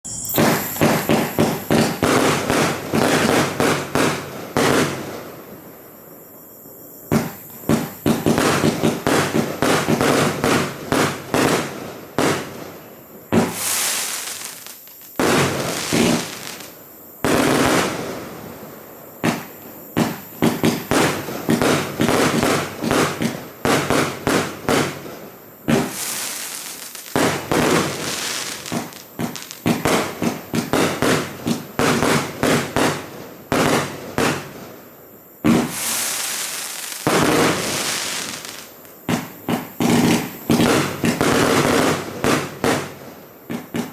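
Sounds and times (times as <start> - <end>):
firework aerial bursts: 0.0 - 5.0, 13.4 - 16.7, 25.7 - 33.0, 35.5 - 42.9.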